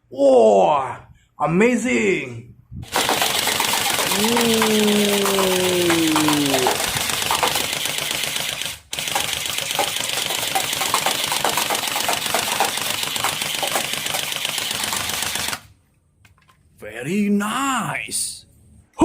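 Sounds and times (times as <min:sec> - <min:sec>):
toy gun firing automatic bursts: 0:02.8 - 0:15.7.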